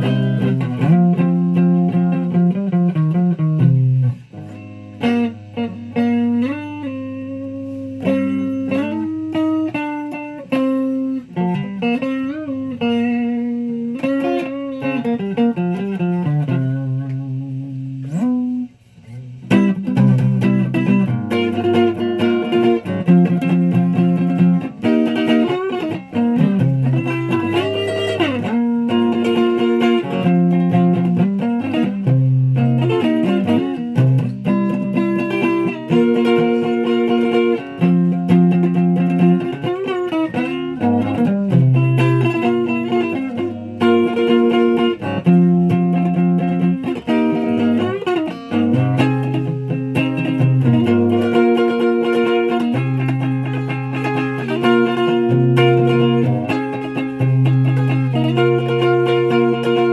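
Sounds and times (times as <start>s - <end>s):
guitar melodic lines: 0.0s - 59.9s.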